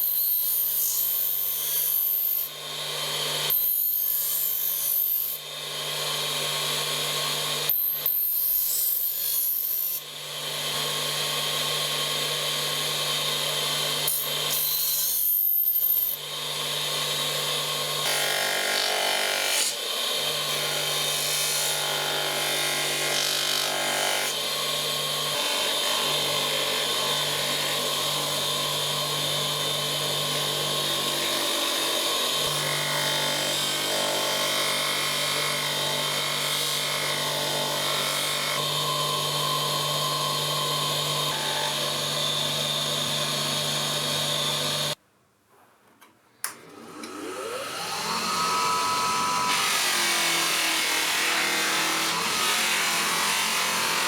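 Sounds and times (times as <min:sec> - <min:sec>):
power tool motor humming: 0:38.6 - 0:45.0.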